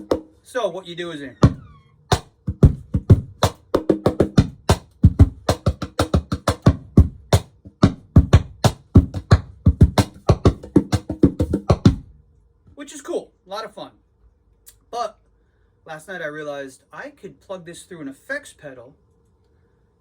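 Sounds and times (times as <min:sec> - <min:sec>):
cajon played by hand: 0:00.0 - 0:00.3, 0:01.4 - 0:12.1.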